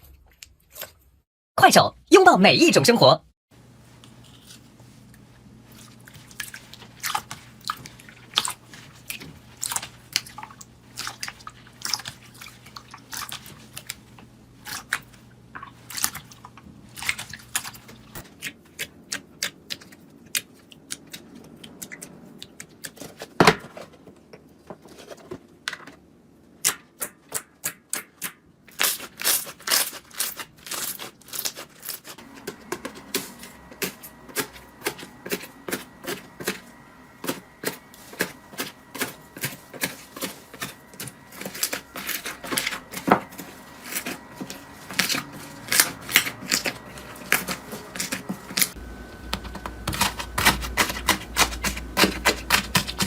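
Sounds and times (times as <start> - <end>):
steady low hum: 32.2 - 53.0.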